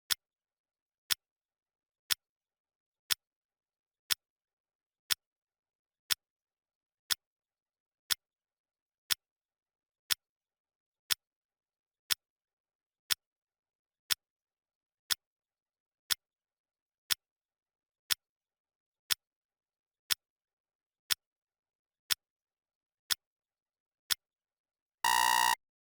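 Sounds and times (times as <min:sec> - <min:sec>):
clock ticking: 0:25.1 - 0:25.6.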